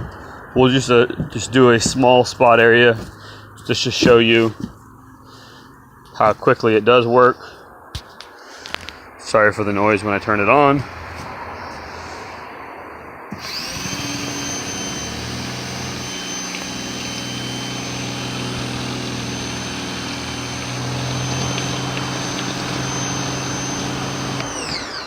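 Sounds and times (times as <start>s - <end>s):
pressure washer motor whining: 13.3s - 25.0s.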